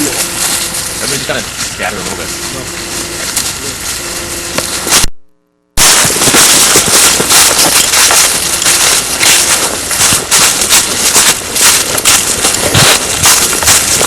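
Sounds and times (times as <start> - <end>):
rapid gunfire: 5.8 - 14.0.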